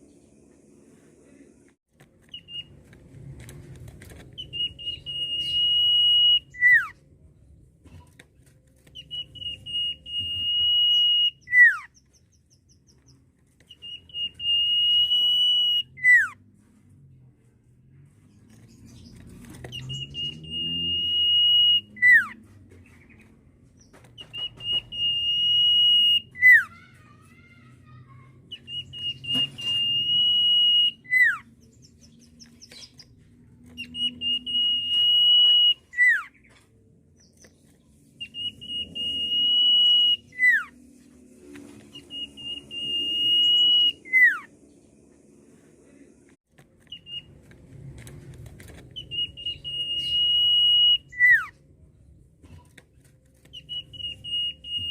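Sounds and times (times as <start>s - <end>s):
bird whistling: 2.3s - 2.8s, 4.4s - 6.9s, 9.0s - 12.0s, 13.7s - 16.4s, 19.7s - 22.4s, 24.2s - 26.7s, 28.5s - 31.8s, 33.8s - 36.4s, 38.2s - 40.8s, 41.9s - 44.5s, 46.9s - 47.3s, 48.9s - 51.5s, 53.5s - 54.9s.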